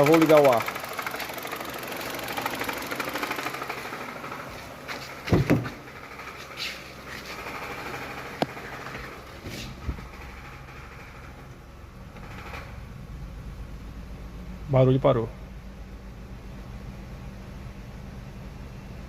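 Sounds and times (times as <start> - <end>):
car engine idling with pulsing: 0.0 - 19.0
low thump: 5.3 - 5.8.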